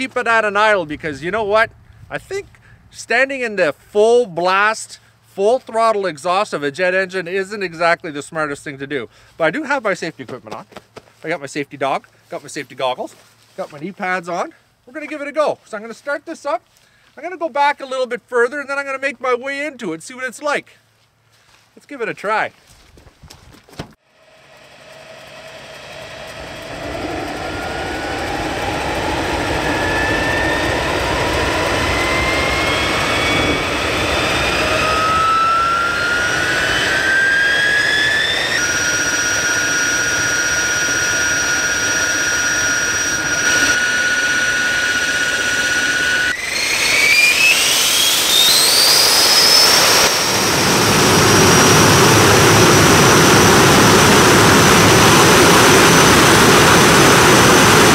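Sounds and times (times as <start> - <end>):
jet engine whine: 24.0 - 57.9
rush of exhaust: 24.0 - 57.9.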